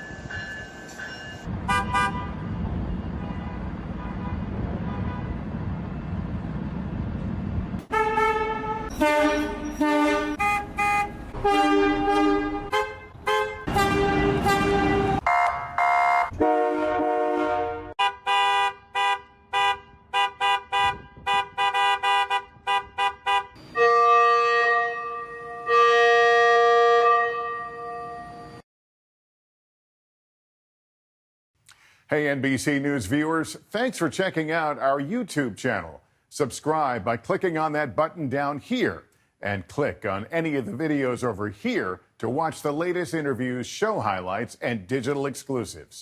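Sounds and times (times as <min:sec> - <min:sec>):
engine and traffic rumble: 0:00.0 - 0:28.6
bus and train horns honking: 0:01.5 - 0:05.6, 0:07.8 - 0:28.6.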